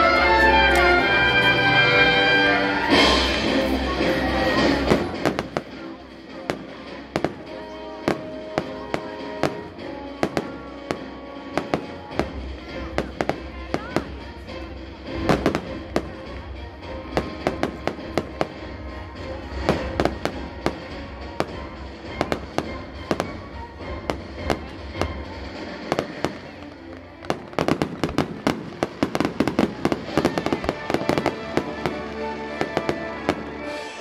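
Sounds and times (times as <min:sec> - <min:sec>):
fireworks bangs and crackles: 0:00.0 - 0:34.0
orchestral music: 0:00.0 - 0:34.0.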